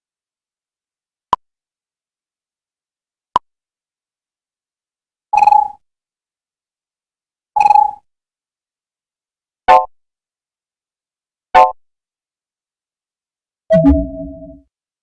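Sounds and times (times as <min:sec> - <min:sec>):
brief computer blip: 0:13.7 - 0:14.6
short electronic beep: 0:13.7 - 0:14.6.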